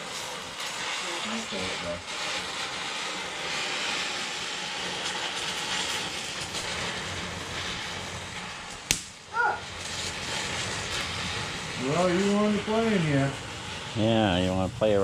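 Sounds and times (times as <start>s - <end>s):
welding torch flame hissing: 0.0s - 15.0s
sharp snap: 8.8s - 9.2s.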